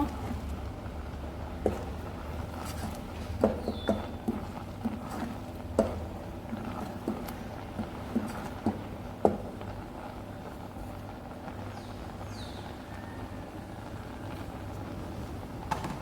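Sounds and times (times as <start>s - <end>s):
spoon knocking against pot: 3.4s - 5.0s, 5.7s - 6.1s.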